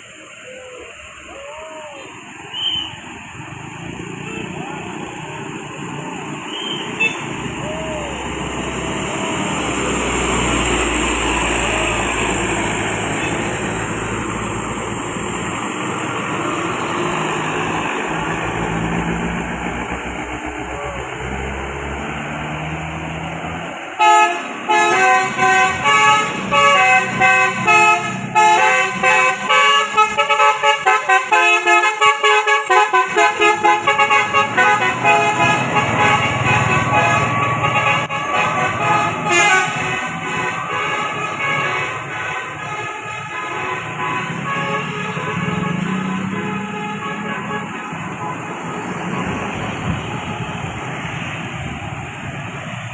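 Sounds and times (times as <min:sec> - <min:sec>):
vehicle engine and road noise: 0:00.0 - 0:52.9
bus horn playing melody: 0:06.6 - 0:07.4, 0:24.0 - 0:50.6.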